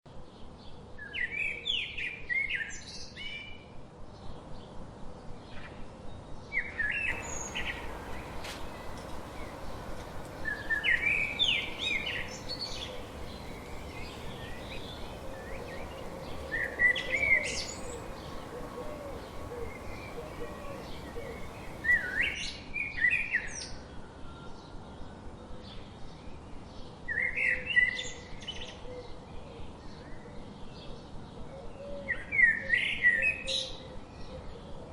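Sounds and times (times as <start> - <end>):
faint forest background: 0.1 - 34.9
songbird warbling: 7.1 - 22.4.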